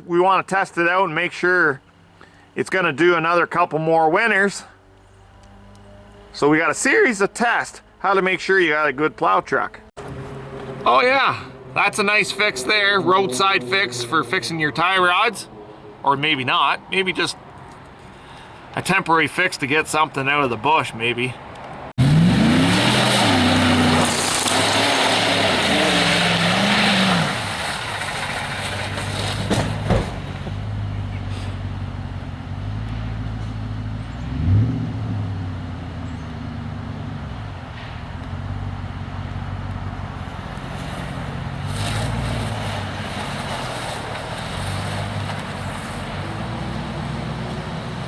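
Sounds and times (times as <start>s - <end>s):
pickup truck engine revving: 22.0s - 37.6s, 38.2s - 48.0s.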